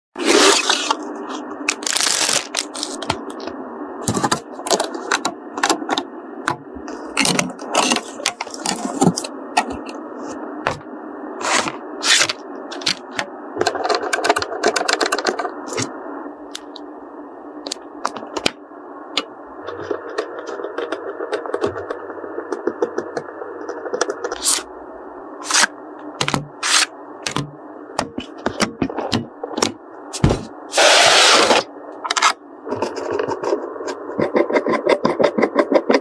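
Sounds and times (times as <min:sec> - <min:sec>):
steady background hiss: 0:00.4 - 0:34.7
computer parts clicking and scraping: 0:06.9 - 0:10.0, 0:11.4 - 0:15.9, 0:19.6 - 0:24.7.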